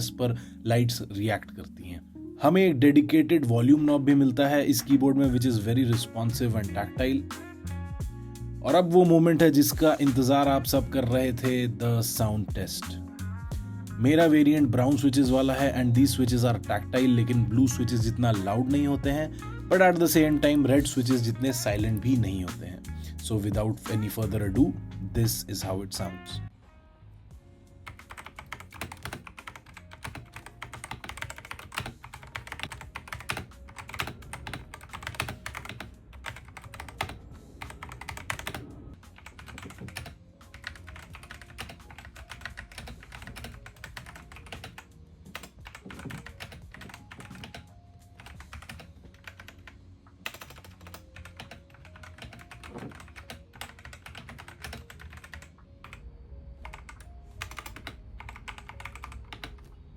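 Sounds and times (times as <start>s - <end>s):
mechanical keyboard typing: 27.8s - 56.0s, 56.6s - 59.7s.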